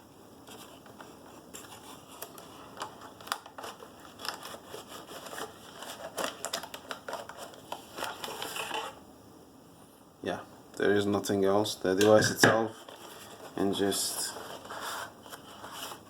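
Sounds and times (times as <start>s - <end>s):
packaging clicks crinkles and rustles: 0.5s - 9.0s.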